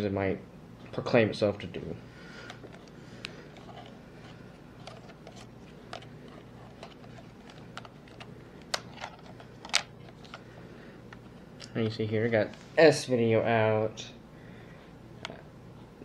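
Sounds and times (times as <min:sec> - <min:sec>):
low steady hum: 0:00.0 - 0:16.0
hands handling plastic camcorder: 0:02.4 - 0:10.5.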